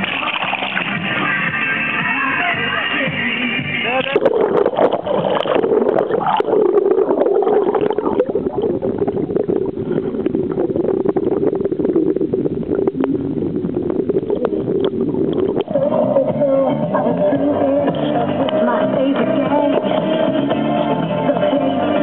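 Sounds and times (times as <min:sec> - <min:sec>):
music: 0:00.0 - 0:05.6, 0:15.6 - 0:22.0
water noise: 0:00.0 - 0:22.0.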